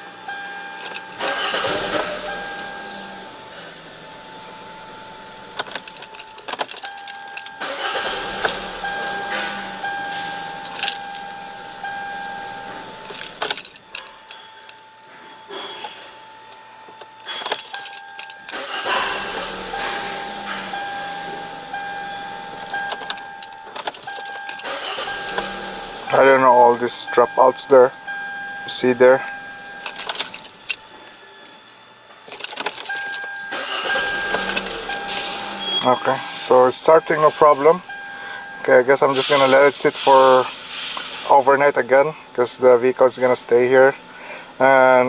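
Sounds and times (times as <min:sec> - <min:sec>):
car engine cranking and starting: 0:00.0 - 0:16.0, 0:16.8 - 0:45.0
car keys jangling: 0:00.0 - 0:45.0
warning tone: 0:00.3 - 0:14.5, 0:17.6 - 0:30.8, 0:32.4 - 0:39.8.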